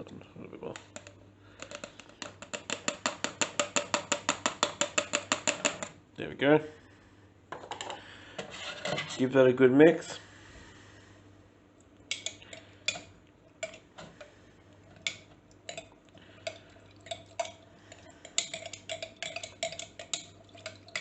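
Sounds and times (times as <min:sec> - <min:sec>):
utensil clinking against bowl: 0:00.8 - 0:05.9, 0:12.1 - 0:13.8, 0:15.0 - 0:21.0.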